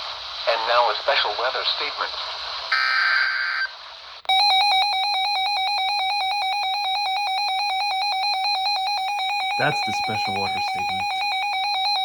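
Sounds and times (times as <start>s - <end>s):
weather radio alarm beeping rapidly: 4.3s - 12.0s.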